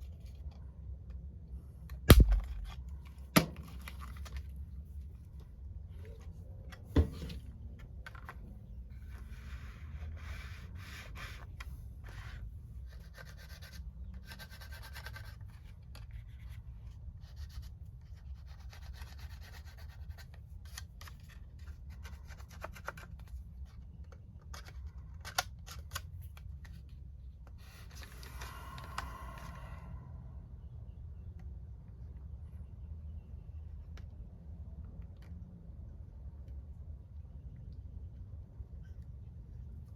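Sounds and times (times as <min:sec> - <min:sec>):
steady low hum: 0:00.0 - 0:12.9, 0:26.3 - 0:33.7
sharp click: 0:02.1 - 0:02.7.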